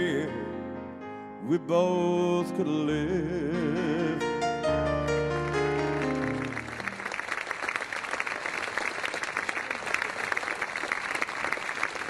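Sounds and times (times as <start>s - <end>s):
piano notes: 0.0s - 7.0s
audience applauding: 5.3s - 12.0s.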